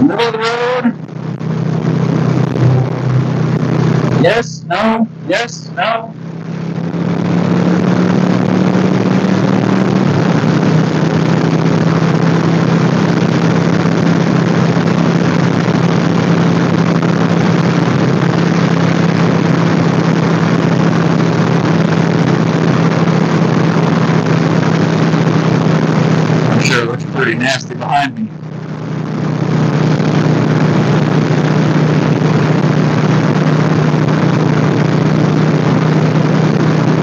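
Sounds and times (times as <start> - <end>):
motorcycle engine drone: 0.0 - 37.0
wind rush on microphone: 1.2 - 4.2.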